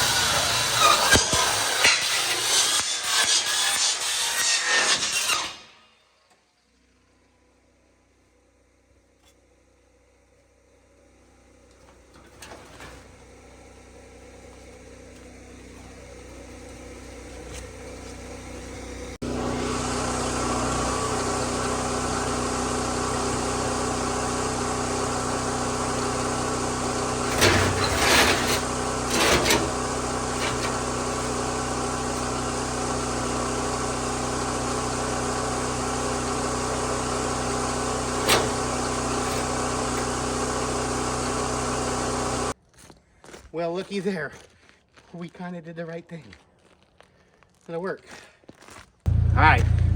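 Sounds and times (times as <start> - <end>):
diesel engine running: 0.0 - 1.6, 6.7 - 42.6, 49.1 - 49.9
faint rising hum: 49.1 - 49.9.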